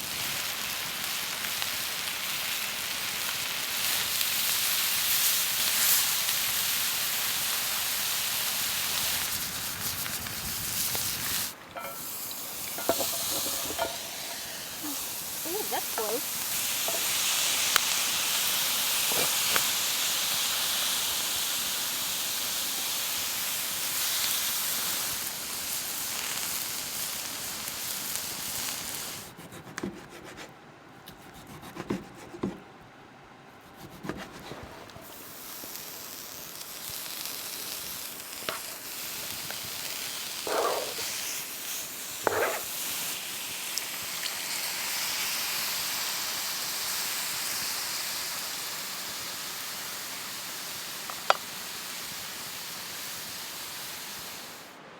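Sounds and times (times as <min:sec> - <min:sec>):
meat sizzling in a pan: 0:00.0 - 0:29.3, 0:35.0 - 0:54.7.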